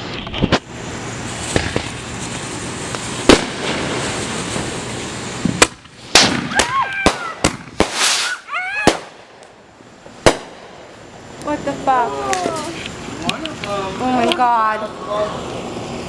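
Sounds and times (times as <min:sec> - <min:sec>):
rapid loud firework cracks: 0:00.0 - 0:11.2
fireworks hissing and banging: 0:00.0 - 0:16.0
people shrieking: 0:06.5 - 0:07.5, 0:08.2 - 0:09.0.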